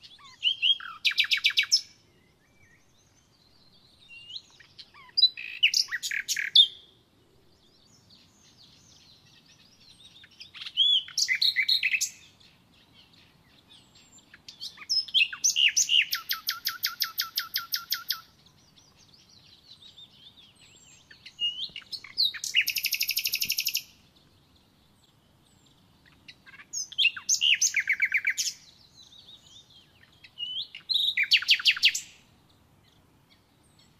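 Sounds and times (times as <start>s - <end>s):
songbird trilling: 0.0s - 3.0s, 4.0s - 6.9s, 7.8s - 32.2s.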